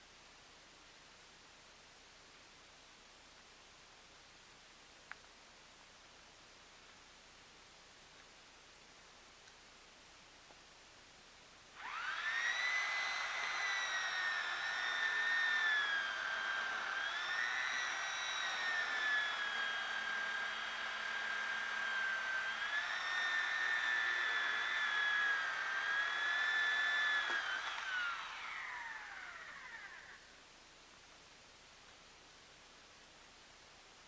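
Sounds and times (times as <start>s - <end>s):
chainsaw cutting log: 11.8s - 30.2s.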